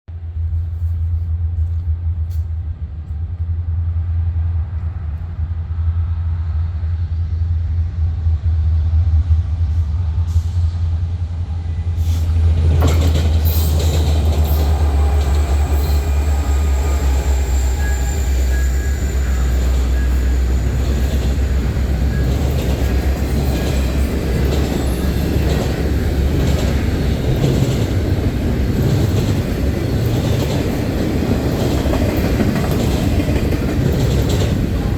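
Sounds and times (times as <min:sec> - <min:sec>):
diesel locomotive engine rumble: 0:00.1 - 0:34.9
freight cars rattling past: 0:12.0 - 0:34.9
faint wheel squeal: 0:13.5 - 0:21.3.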